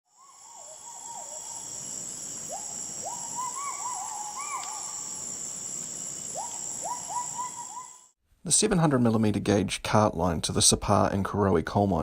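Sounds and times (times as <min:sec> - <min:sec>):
high-pitched insect drone: 0:00.1 - 0:08.2
whistled animal calls: 0:02.4 - 0:05.2, 0:06.3 - 0:08.1.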